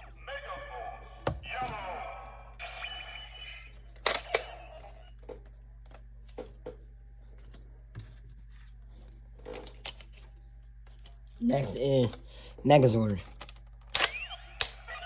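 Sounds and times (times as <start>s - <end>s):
hard plastic toy clicks: 13.2s - 14.8s.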